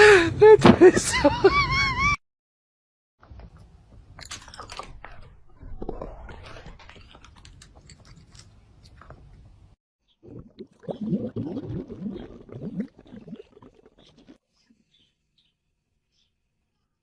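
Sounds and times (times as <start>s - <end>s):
pet chewing crunchy food: 5.8s - 9.6s.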